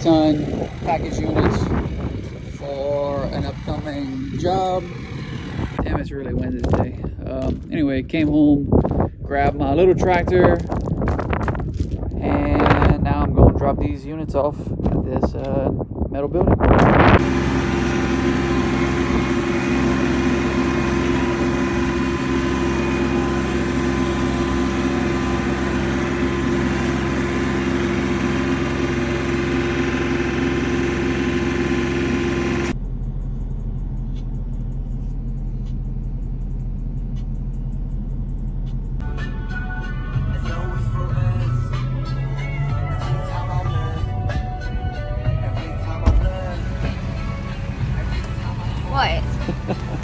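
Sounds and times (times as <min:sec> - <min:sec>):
tractor engine running: 0:00.0 - 0:07.7, 0:16.7 - 0:40.7, 0:46.0 - 0:50.0
low steady hum: 0:46.0 - 0:50.0.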